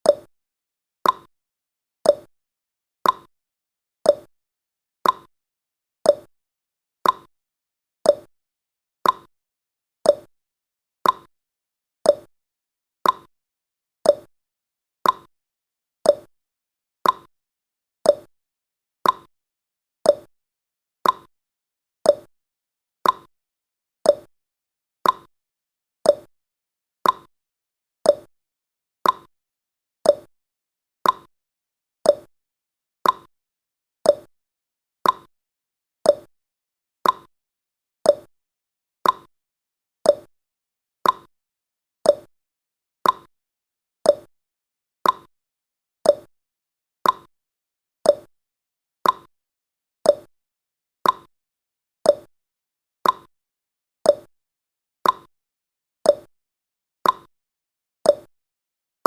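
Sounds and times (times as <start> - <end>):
timer ticking: 0.0 - 0.3, 1.0 - 1.3, 2.1 - 2.3, 3.0 - 3.3, 4.1 - 4.3, 5.0 - 5.3, 6.1 - 6.3, 7.0 - 7.3, 8.1 - 8.3, 9.0 - 9.3, 10.1 - 10.3, 11.0 - 11.3, 12.1 - 12.3, 13.0 - 13.3, 14.1 - 14.3, 15.0 - 15.3, 16.1 - 16.3, 17.0 - 17.3, 18.1 - 18.3, 19.0 - 19.3, 20.1 - 20.3, 21.0 - 21.3, 22.1 - 22.3, 23.0 - 23.3, 24.1 - 24.3, 25.0 - 25.3, 26.1 - 26.3, 27.0 - 27.3, 28.0 - 28.3, 29.0 - 29.3, 30.0 - 30.3, 31.0 - 31.3, 32.1 - 32.3, 33.0 - 33.3, 34.1 - 34.3, 35.0 - 35.3, 36.0 - 36.3, 37.0 - 37.3, 38.1 - 38.3, 39.0 - 39.3, 40.1 - 40.3, 41.0 - 41.3, 42.1 - 42.3, 43.0 - 43.3, 44.1 - 44.3, 45.0 - 45.3, 46.0 - 46.3, 47.0 - 47.3, 48.1 - 48.3, 49.0 - 49.3, 50.1 - 50.3, 51.0 - 51.3, 52.1 - 52.3, 53.0 - 53.3, 54.1 - 54.3, 55.0 - 55.3, 56.1 - 56.3, 57.0 - 57.3, 58.1 - 58.3.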